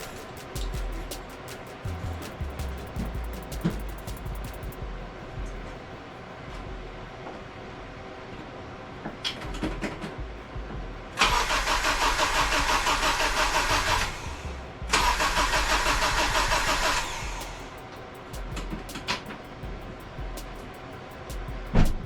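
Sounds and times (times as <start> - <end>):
engine cranking on starter: 11.2 - 17.8.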